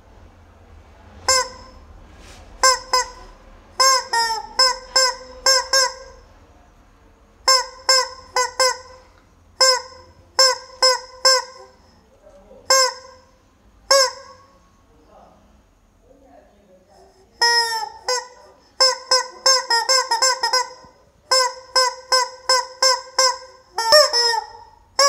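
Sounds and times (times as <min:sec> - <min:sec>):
rubber chicken toy squeaking: 0:01.3 - 0:01.8, 0:02.6 - 0:06.2, 0:07.5 - 0:11.9, 0:12.7 - 0:13.3, 0:13.9 - 0:14.6, 0:17.4 - 0:25.0.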